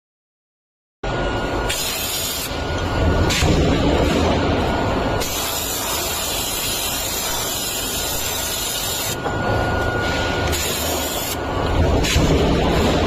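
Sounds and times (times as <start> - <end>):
low machinery rumble: 2.6 - 6.2.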